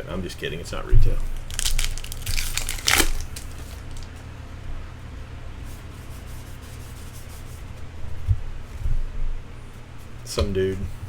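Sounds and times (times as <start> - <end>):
steady low hum: 0.0 - 11.0
trading cards being handled: 1.2 - 4.1.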